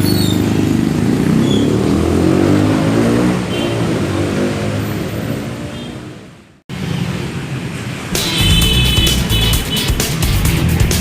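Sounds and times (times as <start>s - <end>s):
vehicle engine running: 8.2s - 11.0s.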